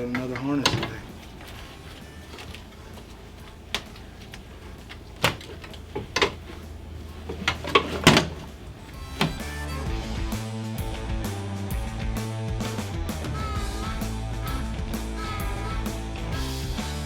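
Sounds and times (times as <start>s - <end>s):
clicks and clunks of hand tools: 0.0s - 1.6s, 2.3s - 8.6s
steady low hum: 0.0s - 17.0s.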